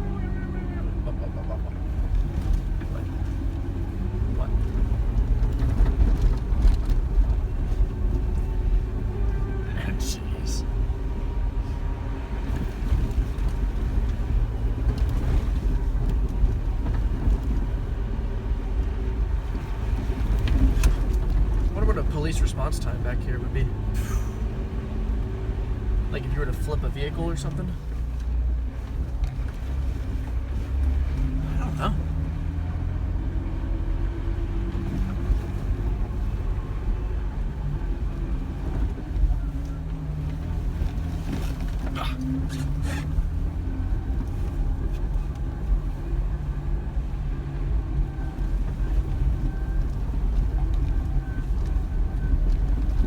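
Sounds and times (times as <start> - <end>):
low engine drone: 0.0 - 22.6, 23.6 - 24.7
engine and tyres rumbling: 0.0 - 53.0.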